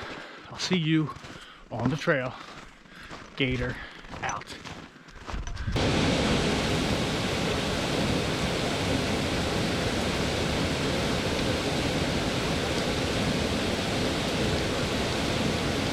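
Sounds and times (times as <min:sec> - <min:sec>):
waterfall rushing: 0:05.8 - 0:15.9.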